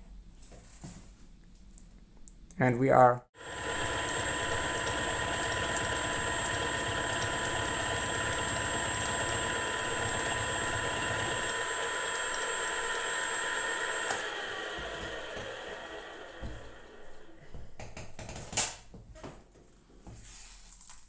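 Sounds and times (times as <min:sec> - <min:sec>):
end mill cutting metal: 0:03.4 - 0:17.4
milling machine whine: 0:03.4 - 0:17.5.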